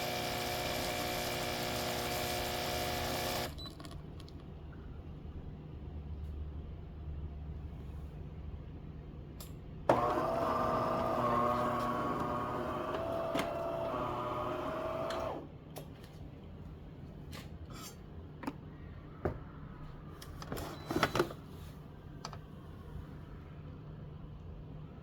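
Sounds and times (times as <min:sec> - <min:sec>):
electric motor whining: 0:09.9 - 0:15.4.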